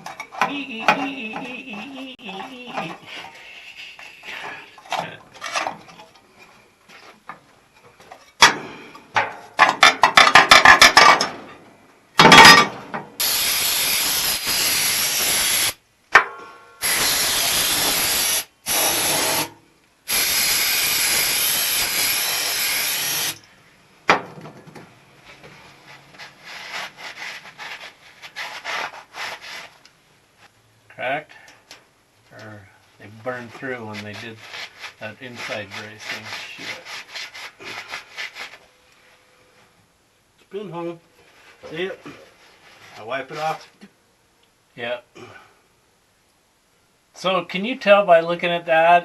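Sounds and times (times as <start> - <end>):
hissing spray: 13.2 - 15.8, 16.8 - 19.5, 20.1 - 23.4
faint scraping: 25.2 - 29.8, 33.0 - 39.7, 41.2 - 43.8.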